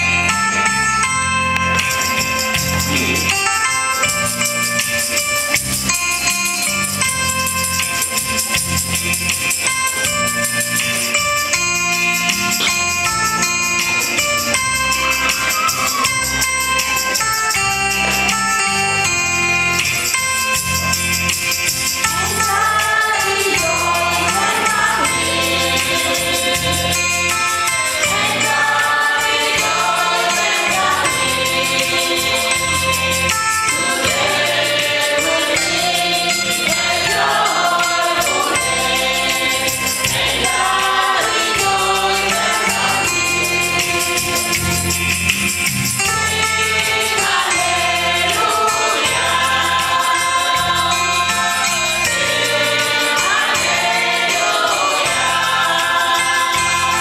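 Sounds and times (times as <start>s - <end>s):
congregation singing a hymn: 22.1s - 44.9s, 46.1s - 57.0s.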